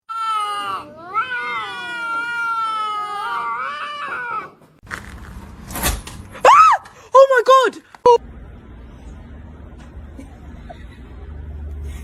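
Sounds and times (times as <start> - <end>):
cat yowling: 0.1 - 4.6.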